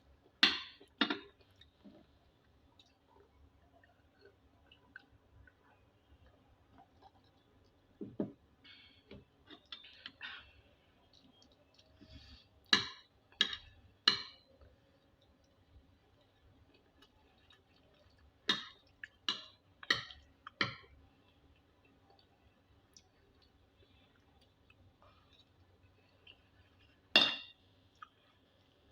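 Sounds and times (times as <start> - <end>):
utensil clinking against dish: 27.2 - 27.6.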